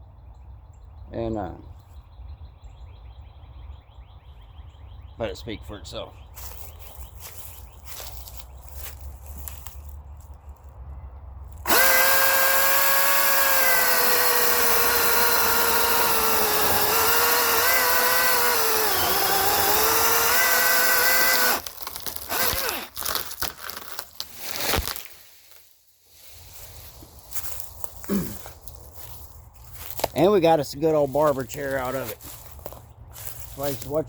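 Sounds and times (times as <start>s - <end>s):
battery chainsaw whining: 11.6s - 25.1s
tree cracking and splitting: 11.6s - 25.7s.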